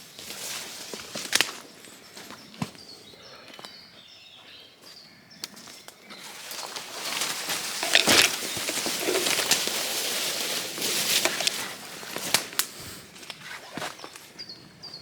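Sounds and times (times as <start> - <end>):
footsteps through undergrowth: 0.0 - 15.0
twigs cracking underfoot: 0.1 - 2.9, 5.4 - 14.4.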